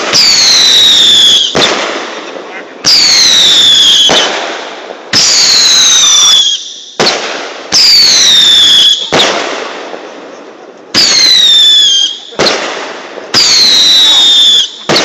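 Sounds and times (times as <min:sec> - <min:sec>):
firework whistle: 0:00.0 - 0:01.9, 0:02.8 - 0:04.5, 0:05.1 - 0:09.5, 0:11.0 - 0:12.7, 0:13.3 - 0:15.0
firework bang: 0:00.0 - 0:10.1, 0:10.9 - 0:15.0.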